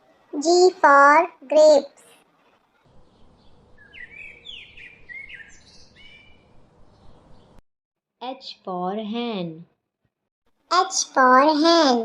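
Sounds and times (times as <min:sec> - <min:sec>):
birds chirping: 0:02.9 - 0:07.6.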